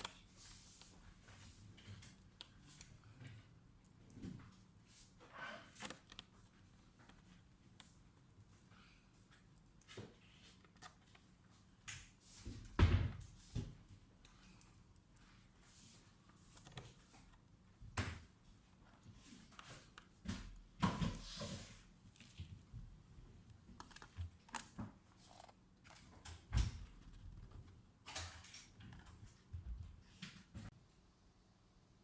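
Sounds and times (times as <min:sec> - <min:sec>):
hands handling laptop and tools: 0:23.5 - 0:29.3.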